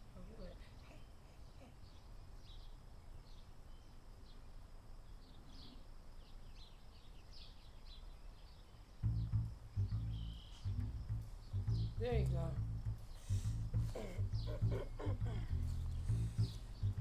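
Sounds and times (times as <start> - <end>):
small birds chirping: 0.0 - 17.0
faint low rumble: 9.0 - 17.0
loud low bump: 9.0 - 17.0.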